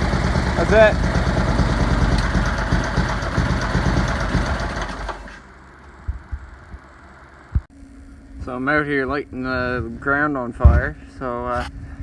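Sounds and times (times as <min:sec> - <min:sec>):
lawn tractor engine idling: 0:00.0 - 0:07.6.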